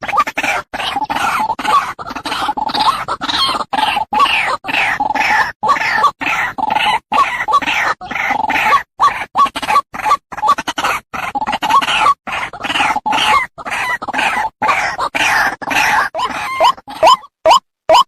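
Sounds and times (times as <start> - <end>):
waterhen calling: 14.9 - 18.0.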